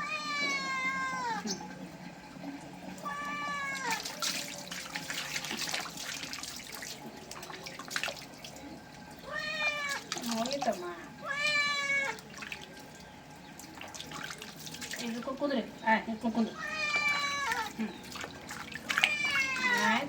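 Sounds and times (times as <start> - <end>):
cat meowing: 0.0 - 1.5, 3.0 - 4.1, 9.2 - 10.1, 11.2 - 12.2, 16.6 - 17.7, 18.9 - 20.0
water splashing and running: 2.4 - 15.7, 16.6 - 20.0.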